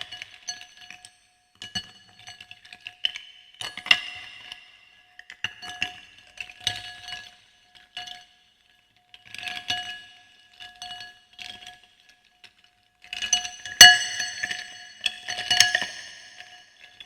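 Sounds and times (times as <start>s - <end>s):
glass ringing: 13.5s - 16.7s.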